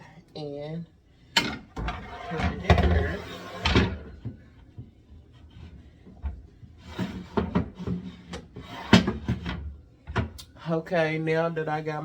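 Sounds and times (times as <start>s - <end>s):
rack knocking and rubbing in cabinet: 1.4s - 4.4s, 6.2s - 10.4s.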